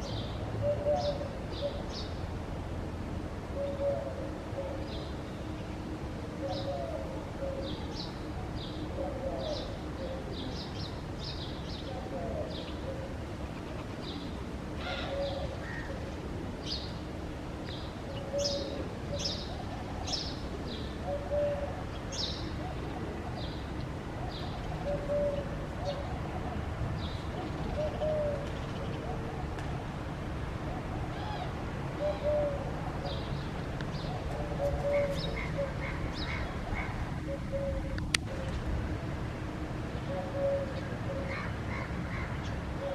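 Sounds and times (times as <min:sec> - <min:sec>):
birds chirping: 0:31.0 - 0:38.7.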